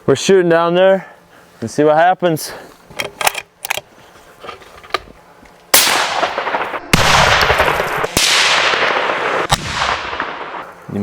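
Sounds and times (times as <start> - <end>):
rifle shot with rolling echo: 5.7 - 10.7
loud bang with long rumble: 5.9 - 10.6.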